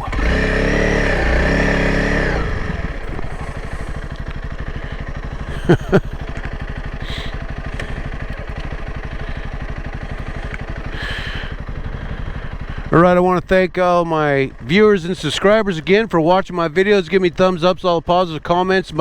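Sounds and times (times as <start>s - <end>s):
motorcycle engine idling: 0.0s - 19.0s
sharp clicks: 2.4s - 4.9s.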